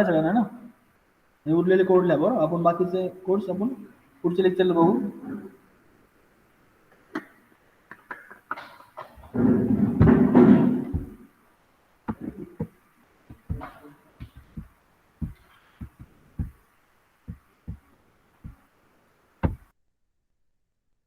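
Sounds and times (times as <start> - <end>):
irregular knocks and taps: 7.9 - 11.3, 12.0 - 18.7, 19.4 - 19.7.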